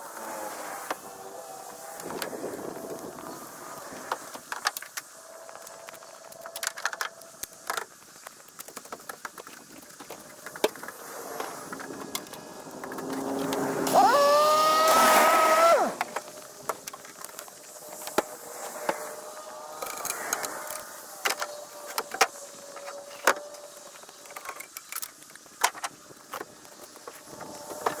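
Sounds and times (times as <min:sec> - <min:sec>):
high-pitched engine whine: 0:11.1 - 0:17.0, 0:17.6 - 0:24.3.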